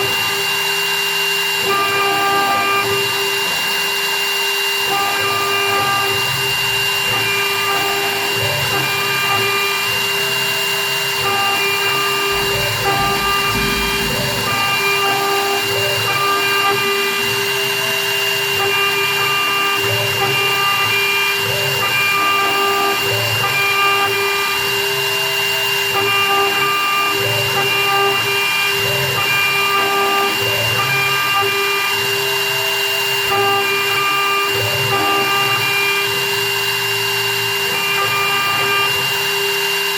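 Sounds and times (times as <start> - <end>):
milling machine whine: 0.0 - 39.9
short pitched tones: 11.5 - 16.2.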